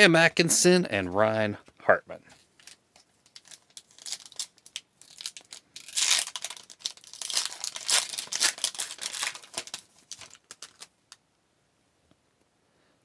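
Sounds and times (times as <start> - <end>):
wrapper tearing and crinkling: 2.6 - 11.1.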